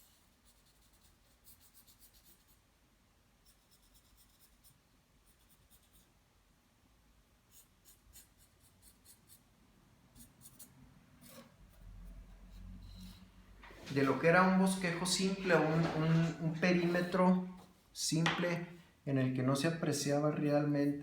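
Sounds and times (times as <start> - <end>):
drawing tool scratching on paper: 0.0 - 2.7, 3.4 - 6.1, 7.5 - 9.5, 10.1 - 13.3.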